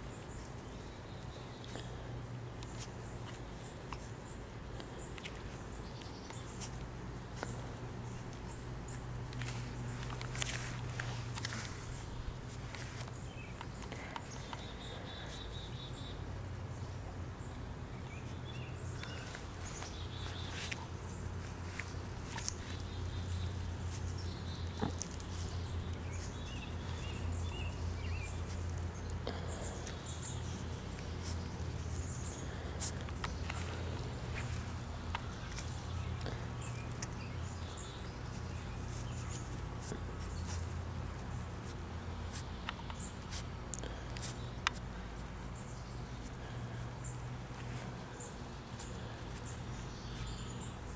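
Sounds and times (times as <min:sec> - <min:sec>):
bird chirping: 0:00.0 - 0:47.2, 0:47.8 - 0:50.9
steady low hum: 0:00.0 - 0:50.9
small ticks and scuffles: 0:00.1 - 0:15.6, 0:18.2 - 0:50.9
small clicks and rustles: 0:04.8 - 0:14.9.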